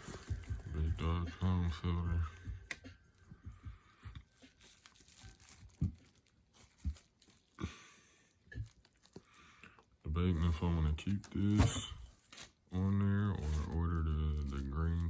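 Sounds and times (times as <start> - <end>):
packaging crinkling: 0.0 - 0.7, 4.3 - 7.6, 8.3 - 15.0.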